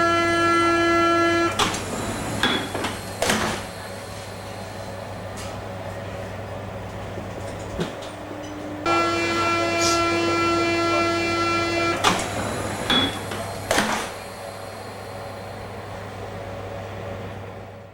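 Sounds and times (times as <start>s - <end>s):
buzzing warning tone: 0.0s - 1.7s, 8.8s - 13.7s.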